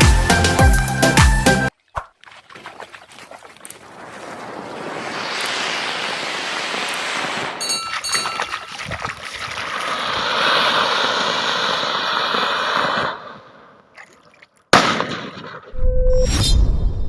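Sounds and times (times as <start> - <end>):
water splashing and rushing: 1.7 - 14.7.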